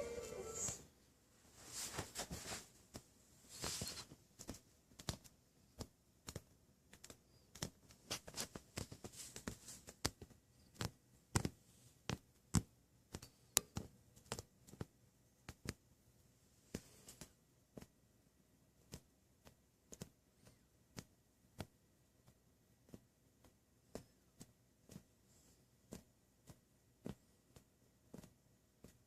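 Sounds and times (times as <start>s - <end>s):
rustling: 1.4s - 12.2s.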